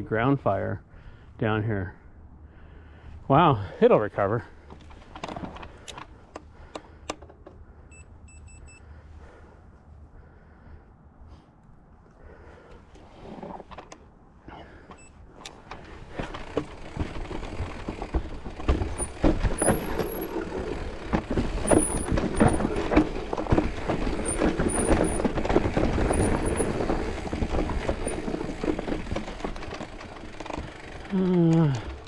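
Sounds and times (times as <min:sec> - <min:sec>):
bike knocking and rattling: 0:04.5 - 0:07.8, 0:13.5 - 0:32.0
bike tyre noise: 0:14.5 - 0:32.0.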